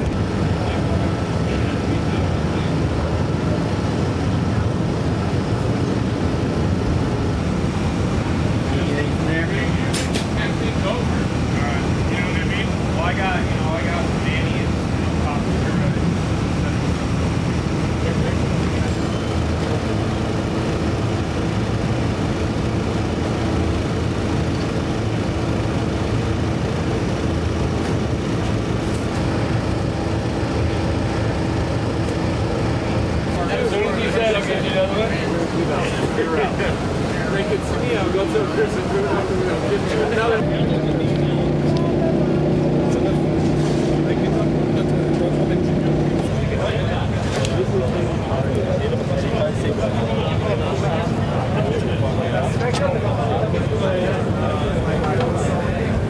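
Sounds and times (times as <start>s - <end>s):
engine rumble: 0.0s - 56.0s.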